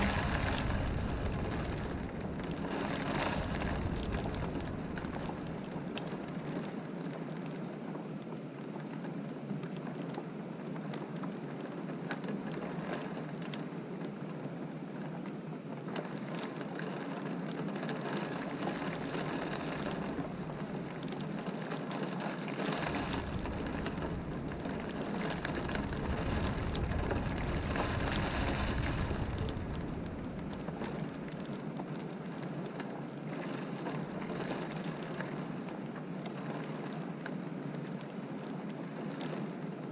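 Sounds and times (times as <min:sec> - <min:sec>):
low rumble: 0:00.0 - 0:05.8, 0:22.8 - 0:31.4
rain beating on a window: 0:00.0 - 0:39.9.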